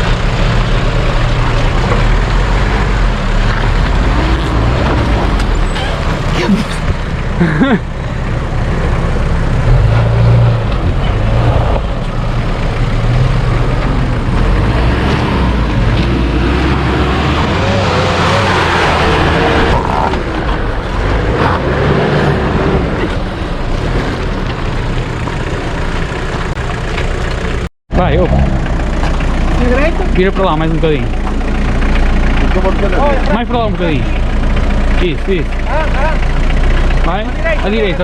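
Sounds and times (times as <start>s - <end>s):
off-road vehicle engine: 0.0s - 38.0s
vehicle moving over rough ground: 0.0s - 38.0s.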